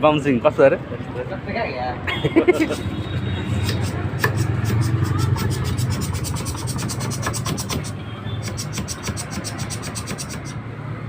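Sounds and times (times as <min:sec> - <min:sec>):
rapid even clicking: 0:03.6 - 0:10.6.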